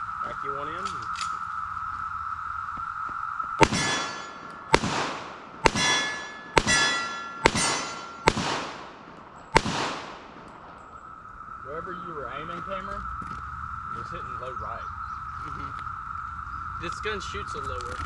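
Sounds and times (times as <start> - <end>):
pistol shots with echo: 3.6 - 10.8.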